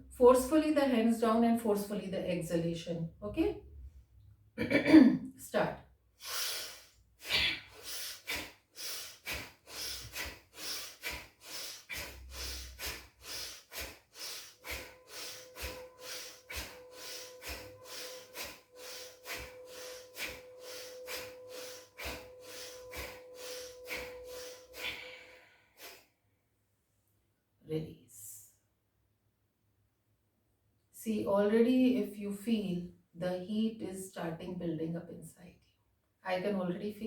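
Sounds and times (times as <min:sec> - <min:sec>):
rapid forceful breathing: 0:06.2 - 0:26.1.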